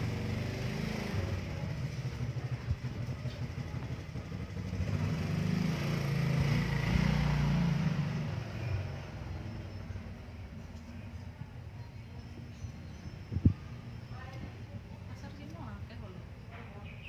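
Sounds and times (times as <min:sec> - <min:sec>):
motor vehicle passing by: 0:00.0 - 0:11.1.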